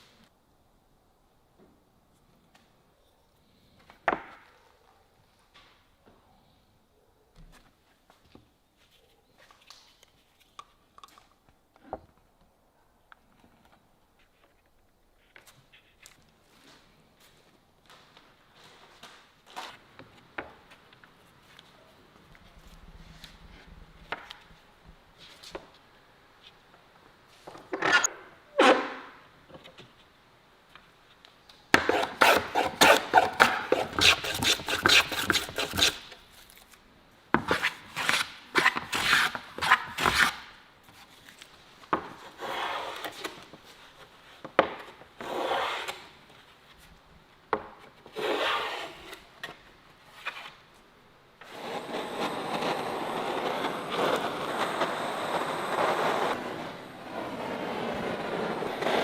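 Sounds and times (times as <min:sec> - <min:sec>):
hand tool rubbing across wood: 0:31.8 - 0:36.2.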